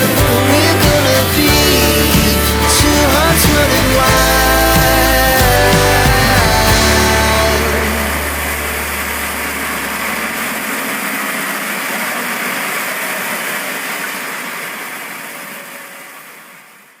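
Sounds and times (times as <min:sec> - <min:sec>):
sawmill engine running: 0:00.0 - 0:12.4.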